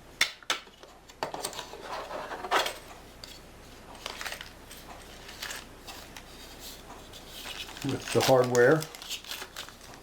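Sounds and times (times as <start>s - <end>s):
packaging rustling and clattering: 3.9s - 10.0s.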